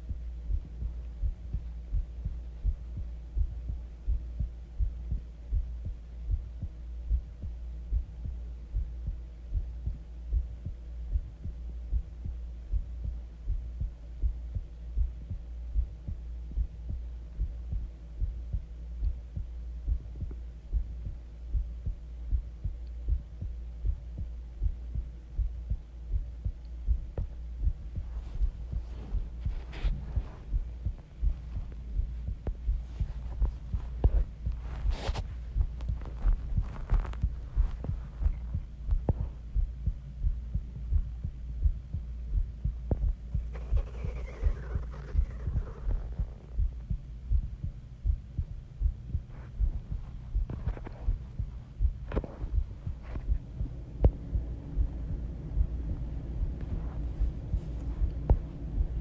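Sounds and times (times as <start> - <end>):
heartbeat: 0.0 - 59.0
low hum: 0.0 - 59.0
scratchy rustle: 34.7 - 35.4, 43.5 - 46.5.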